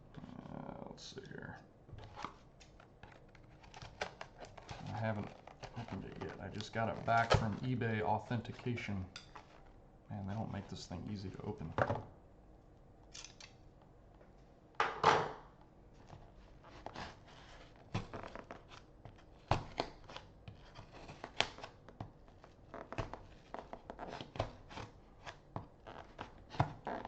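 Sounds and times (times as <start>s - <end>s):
plastic package crinkling: 2.0s - 7.8s
plastic tearing: 2.0s - 7.8s.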